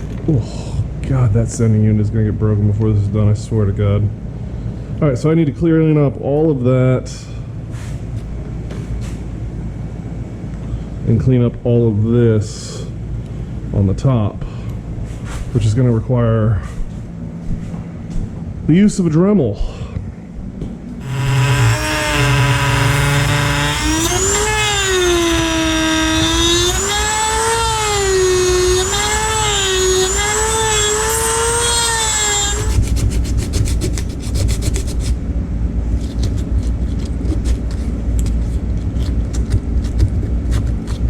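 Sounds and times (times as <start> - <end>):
rotary tool whining: 21.0 - 34.4.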